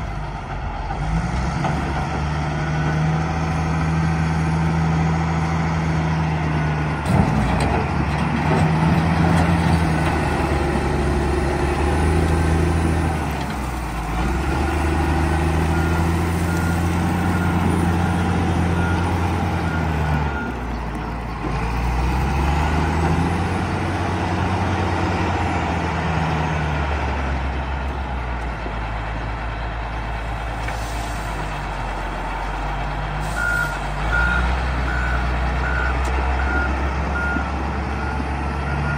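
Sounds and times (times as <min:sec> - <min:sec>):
wheel loader diesel engine revving: 0:00.0 - 0:38.9
reversing alarm beeping: 0:33.3 - 0:38.9.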